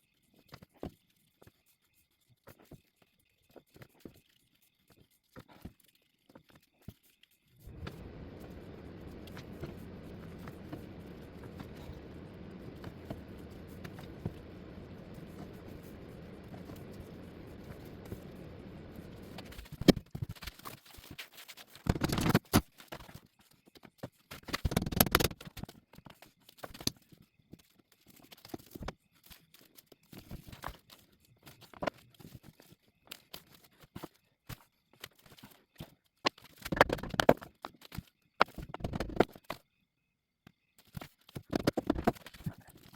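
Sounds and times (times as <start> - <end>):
low hum: 7.6 - 19.9.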